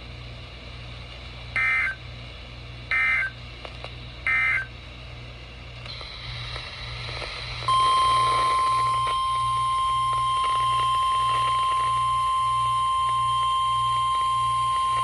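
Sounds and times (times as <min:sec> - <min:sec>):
steady loud alarm beep: 0:02.9 - 0:03.3, 0:04.3 - 0:04.6, 0:07.7 - 0:15.0.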